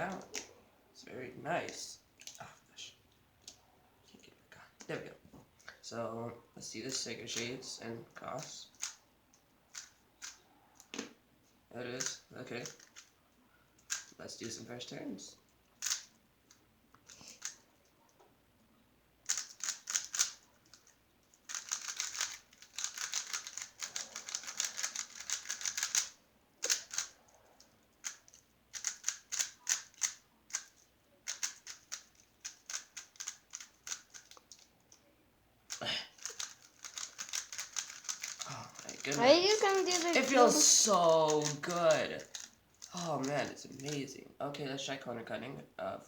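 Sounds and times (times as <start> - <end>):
plastic puzzle cube clicking: 8.7 - 9.0, 9.7 - 11.0, 12.0 - 13.1, 13.8 - 14.1, 15.8 - 17.6, 19.3 - 27.2, 28.0 - 34.9, 35.7 - 40.3, 41.3 - 43.9.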